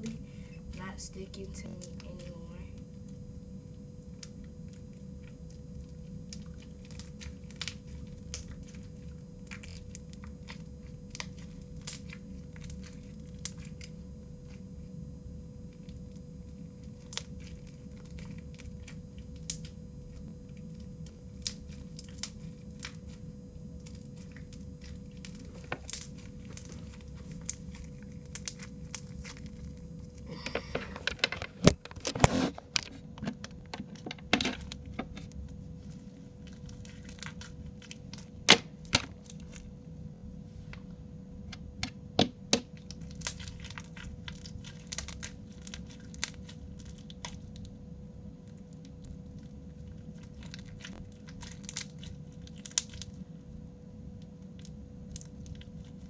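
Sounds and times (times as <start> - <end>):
crunchy slime crackling and popping: 0.0 - 56.0.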